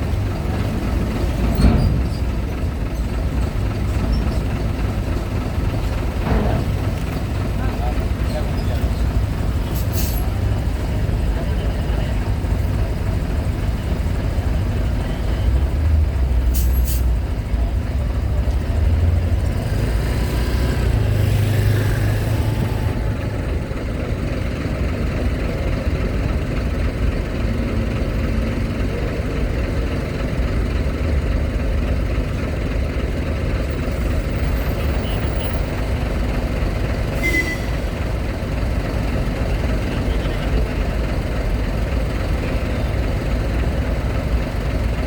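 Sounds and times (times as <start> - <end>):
truck diesel engines rumbling: 0.0 - 45.0.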